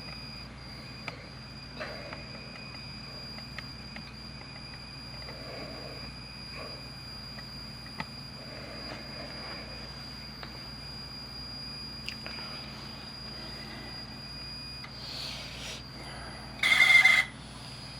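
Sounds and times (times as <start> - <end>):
cassette deck squealing: 16.6 - 17.4.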